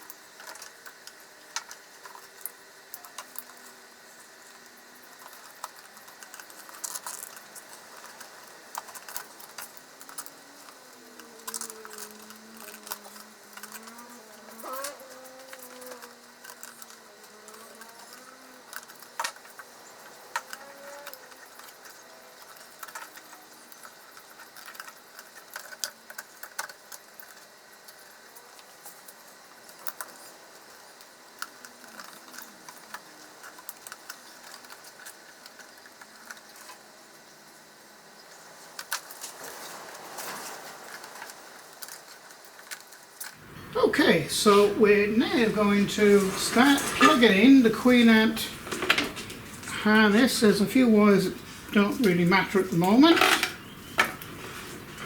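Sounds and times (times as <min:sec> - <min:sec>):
small parts and tools clinking: 0:00.0 - 0:36.9, 0:44.4 - 0:55.0.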